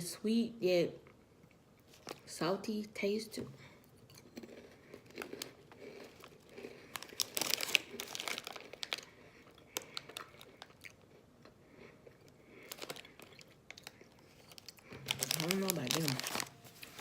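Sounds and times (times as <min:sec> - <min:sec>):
crunchy biscuits being chewed: 0:04.2 - 0:17.0.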